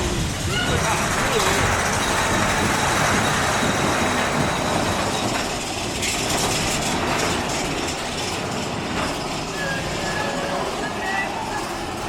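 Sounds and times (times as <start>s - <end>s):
roller coaster rumbling on track: 0.0s - 12.0s.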